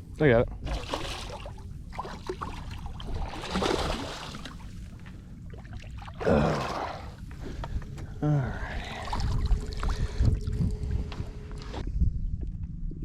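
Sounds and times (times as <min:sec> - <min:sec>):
water splashing and dripping: 0:00.7 - 0:04.7.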